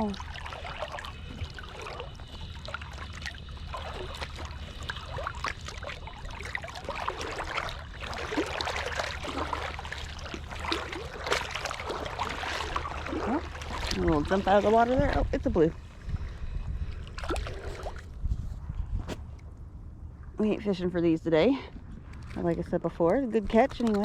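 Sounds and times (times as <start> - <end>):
small splashes and gurgles: 0.0 - 18.4
water lapping and trickling: 0.0 - 24.0.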